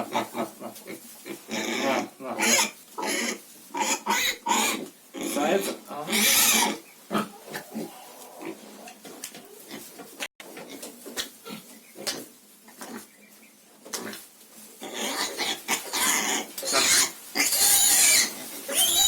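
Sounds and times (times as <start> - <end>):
pig grunting and snuffling: 0.0 - 13.2, 13.8 - 19.0
pig squealing: 1.4 - 9.9, 14.8 - 19.0.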